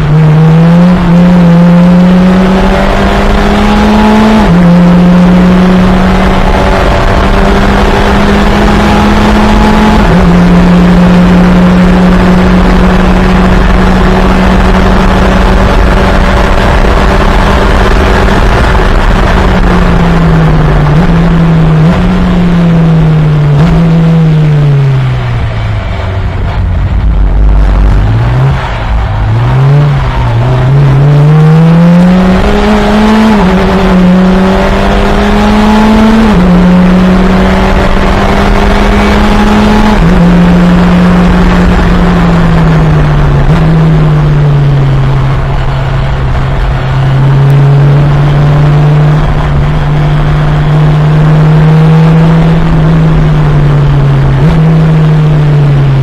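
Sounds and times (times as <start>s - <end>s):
race car engine downshifting and accelerating: 0.0s - 56.0s.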